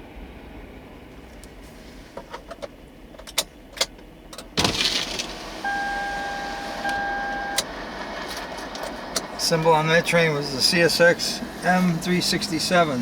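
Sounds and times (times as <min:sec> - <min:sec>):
sharp clicks and clunks: 0:02.2 - 0:09.3
steady whining tone: 0:04.6 - 0:13.0.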